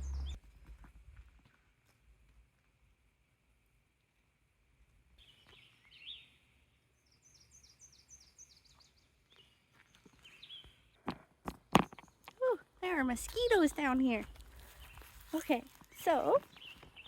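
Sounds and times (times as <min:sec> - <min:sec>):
bird singing falling notes: 0:00.0 - 0:00.4
faint bird chirps: 0:05.2 - 0:11.0.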